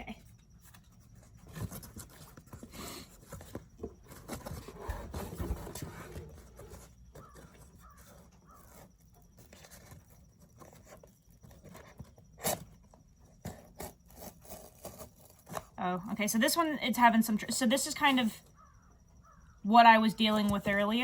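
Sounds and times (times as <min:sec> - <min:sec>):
knife crunching through cardboard: 0:01.4 - 0:15.8.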